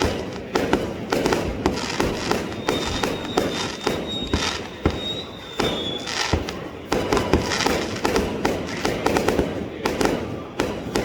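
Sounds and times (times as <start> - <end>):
fireworks bangs: 0.0 - 11.0
high firework whistle: 1.2 - 8.8.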